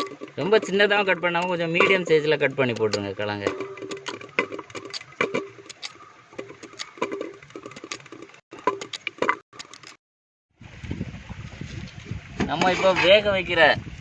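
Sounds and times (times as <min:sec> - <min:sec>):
wind noise: 0:10.6 - 0:14.0.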